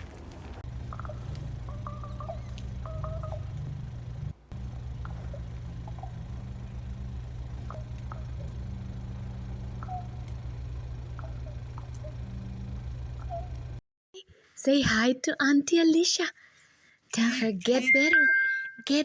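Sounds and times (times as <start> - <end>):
low mechanical hum: 0.0 - 13.8
faint high chirps: 0.7 - 13.8.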